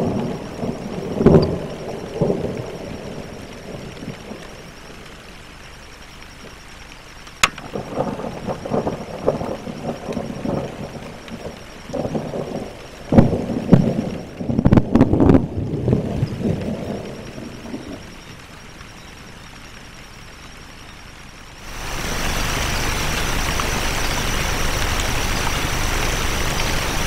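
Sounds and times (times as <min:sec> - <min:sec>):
sharp crack: 0:07.4 - 0:07.7.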